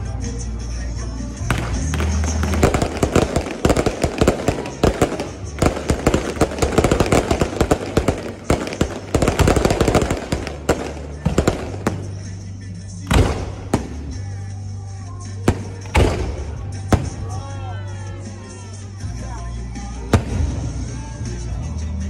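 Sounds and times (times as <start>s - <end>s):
fireworks cracking and popping: 1.5s - 12.5s, 13.1s - 14.4s, 15.5s - 17.4s.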